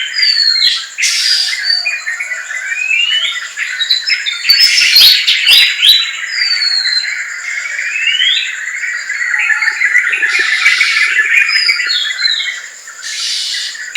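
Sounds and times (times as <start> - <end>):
birds chirping: 0.0 - 13.9.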